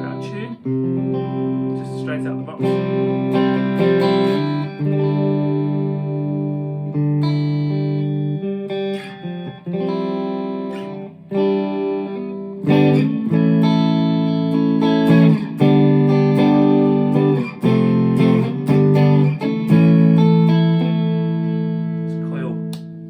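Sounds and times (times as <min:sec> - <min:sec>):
electric guitar playing chords: 0:00.0 - 0:23.0.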